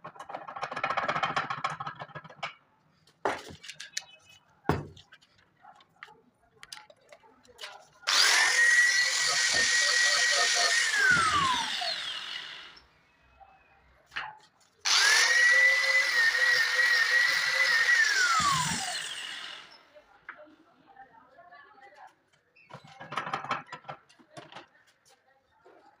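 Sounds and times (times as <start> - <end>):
power tool motor whining: 8.1 - 12.8, 14.9 - 19.8.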